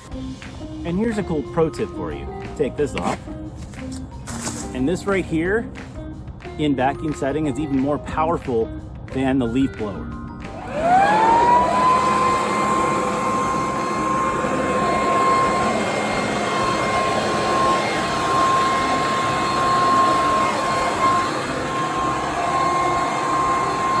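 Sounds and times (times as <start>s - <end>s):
leaf vacuum motor whine: 10.5s - 24.0s.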